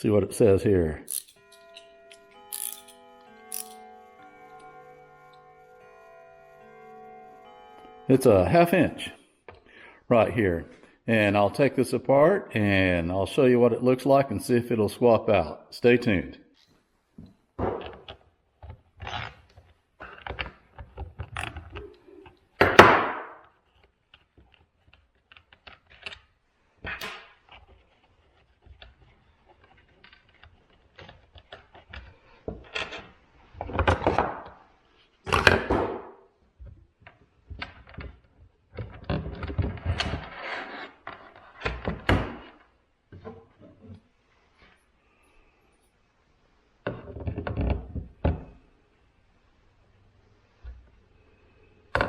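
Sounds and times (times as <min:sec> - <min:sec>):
clunks and scrapes of tools: 0:36.6 - 0:45.3.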